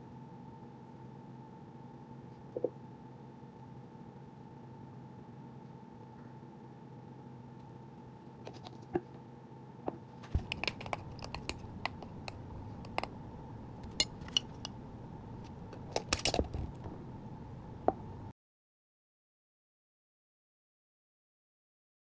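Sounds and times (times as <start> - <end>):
steady low hum: 9.3 - 18.3
kitchen items clicking and knocking: 10.3 - 14.8, 15.4 - 17.0.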